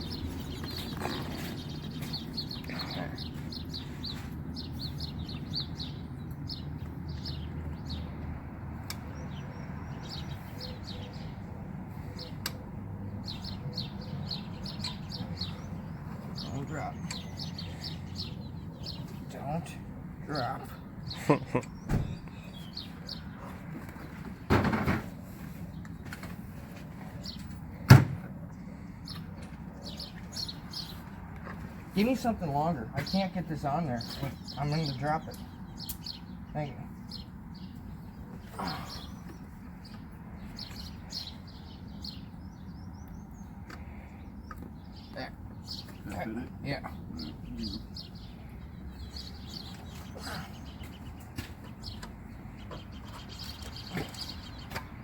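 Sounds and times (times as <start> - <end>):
bird chirping downward notes: 0.0 - 11.5
birds chirping faintly: 0.0 - 55.0.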